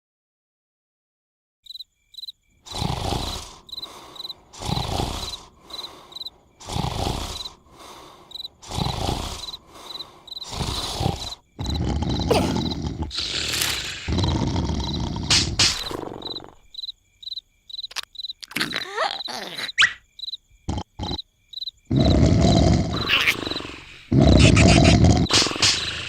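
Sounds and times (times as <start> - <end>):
crickets chirping: 1.6 - 26.0
cartoon snoring: 2.6 - 16.7, 18.4 - 19.9, 20.6 - 21.2, 21.9 - 26.0.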